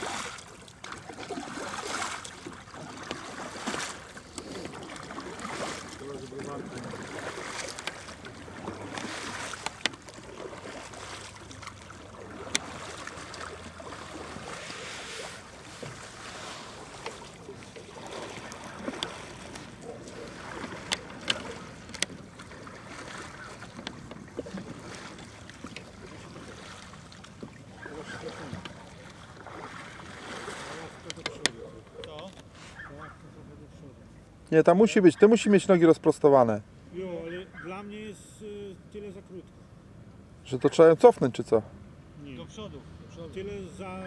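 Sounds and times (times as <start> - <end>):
water washing: 0.0 - 31.4
knocks and clicks on hull: 2.2 - 10.9, 11.6 - 14.7, 16.9 - 32.5.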